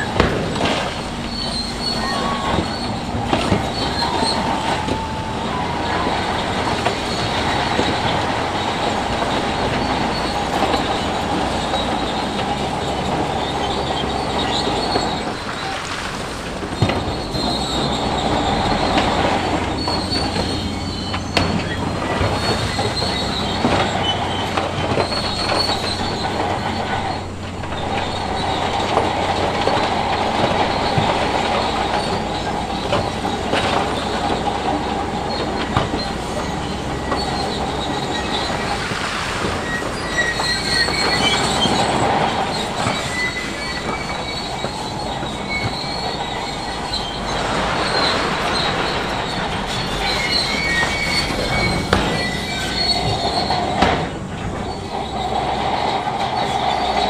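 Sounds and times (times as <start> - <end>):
diesel engine under load: 0.0 - 57.0
steel tracks squealing and clanking: 0.0 - 57.0.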